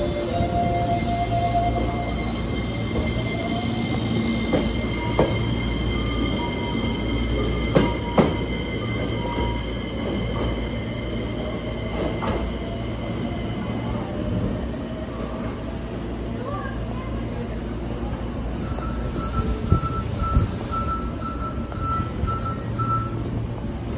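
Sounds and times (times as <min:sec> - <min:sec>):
electric train running: 0:00.0 - 0:14.5.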